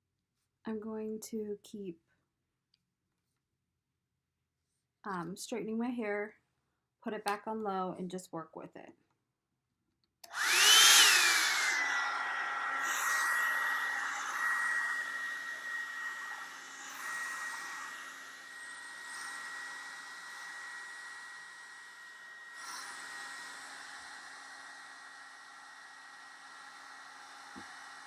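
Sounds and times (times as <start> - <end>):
hair dryer motor whine: 10.3 - 28.0.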